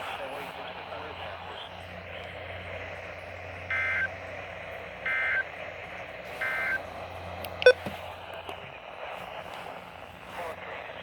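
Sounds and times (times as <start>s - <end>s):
low hum: 0.0s - 11.0s
radio hiss: 0.0s - 11.0s
digital data bursts: 3.7s - 4.2s, 5.0s - 5.6s.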